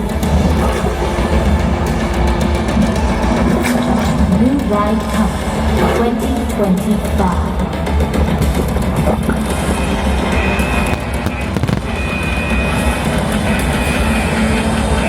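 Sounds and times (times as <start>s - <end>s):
music with heavy bass: 7.3s - 15.0s
firework bangs and crackling: 10.6s - 13.3s.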